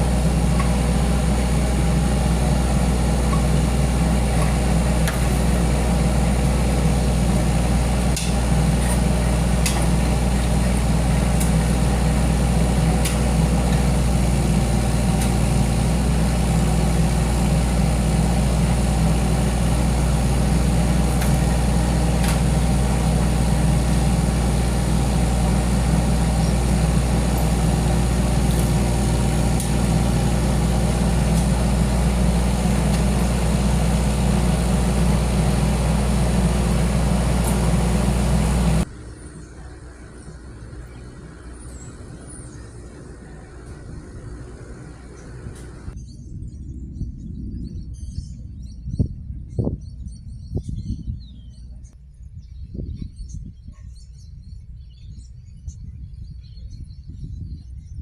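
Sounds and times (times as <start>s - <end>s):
heavy engine idling: 0.0s - 46.0s.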